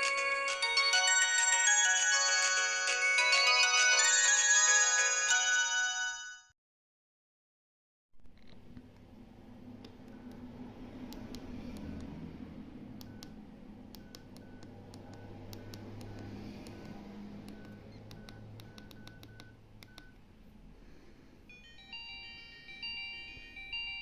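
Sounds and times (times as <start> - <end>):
beeping phone ringtone melody: 0.0 - 6.5, 14.0 - 20.1, 21.5 - 24.0
phone keys clicking with beeps: 10.0 - 10.5, 13.0 - 20.2.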